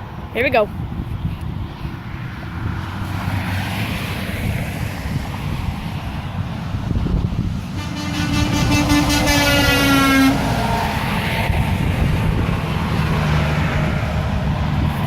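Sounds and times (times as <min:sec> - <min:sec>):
passing trucks engine and tyre noise: 0:00.0 - 0:15.0
truck air horn blast: 0:07.7 - 0:10.6.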